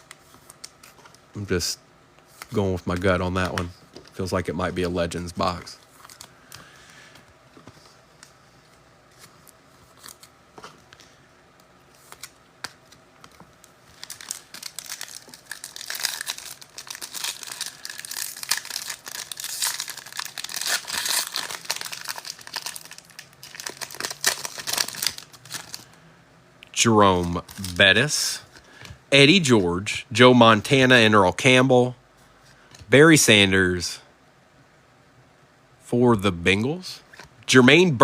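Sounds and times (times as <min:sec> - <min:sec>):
foil wrapper crinkling and tearing: 0:13.8 - 0:25.9, 0:27.2 - 0:27.9.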